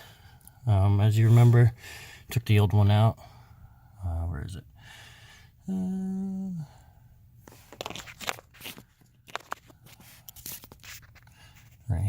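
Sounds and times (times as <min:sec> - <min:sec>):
man humming: 0:05.6 - 0:06.8
crinkling rustles: 0:07.4 - 0:11.9.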